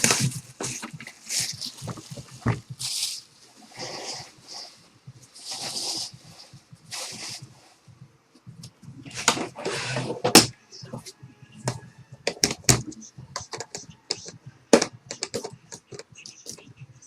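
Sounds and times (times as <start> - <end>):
plastic wrapper rustling: 0.0 - 3.6
cards clicking and tapping: 11.7 - 16.7.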